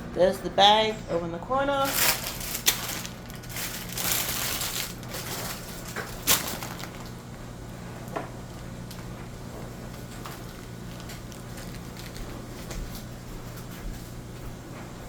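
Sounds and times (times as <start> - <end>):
rustling crinkling handling noise: 1.5 - 15.0.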